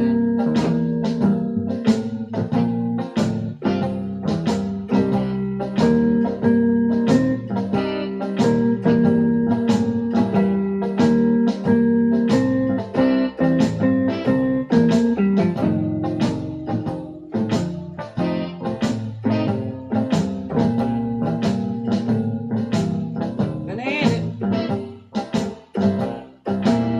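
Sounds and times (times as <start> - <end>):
blues on electronic keyboard: 0.0 - 26.9.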